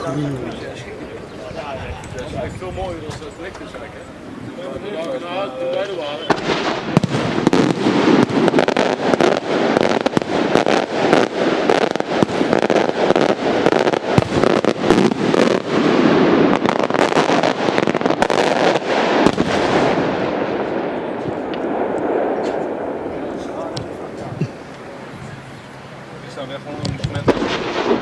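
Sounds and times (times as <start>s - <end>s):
firework shells bursting: 5.0s - 25.1s, 26.8s - 28.0s.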